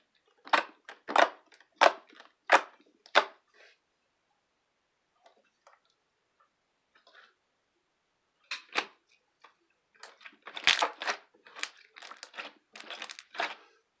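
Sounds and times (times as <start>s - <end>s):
slime squeezed clicking and crackling: 10.0s - 13.5s.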